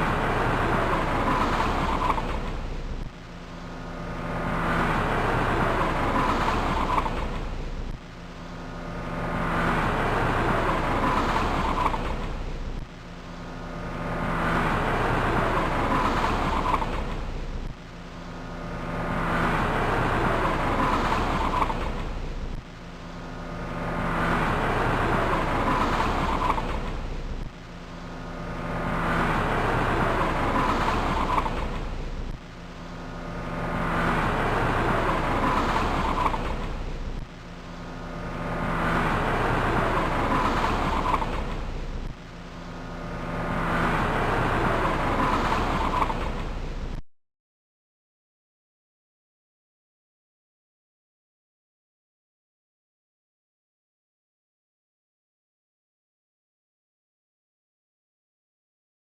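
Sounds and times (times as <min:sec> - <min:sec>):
car engine: 0:00.0 - 0:47.0
road noise: 0:00.0 - 0:47.0.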